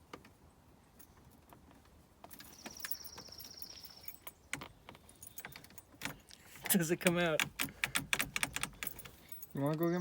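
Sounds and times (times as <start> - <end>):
keys jingling in ignition lock: 2.4 - 6.4, 7.0 - 10.0.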